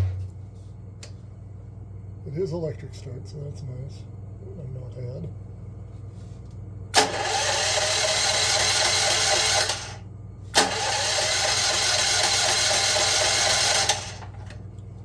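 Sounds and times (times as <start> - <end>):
starter cranking engine: 7.0 - 14.6.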